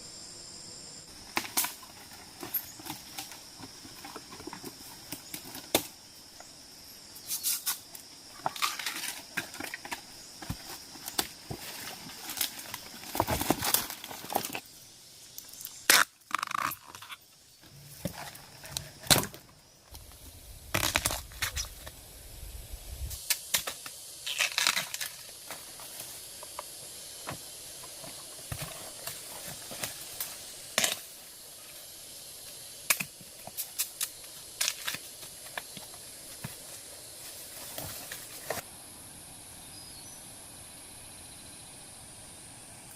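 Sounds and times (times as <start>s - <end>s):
crunching and rustling: 8.4s - 14.7s.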